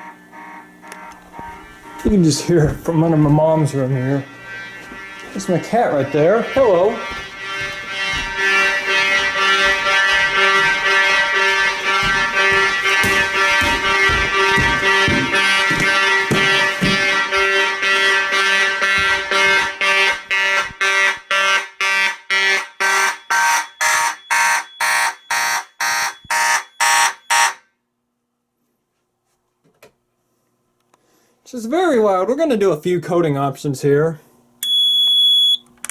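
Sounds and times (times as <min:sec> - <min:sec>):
pulsing fire alarm horns: 0:00.0 - 0:27.8.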